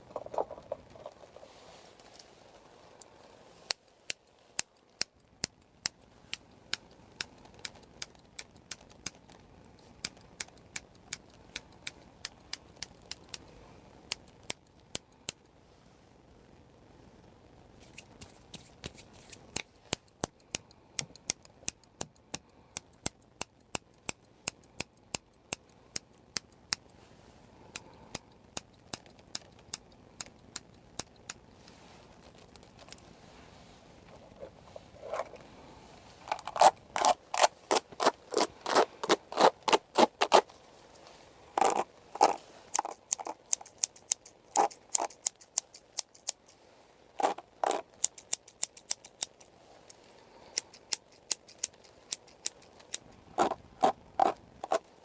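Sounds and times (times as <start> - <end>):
scissors snipping: 41.6 - 46.6, 47.2 - 49.4, 50.5 - 54.8.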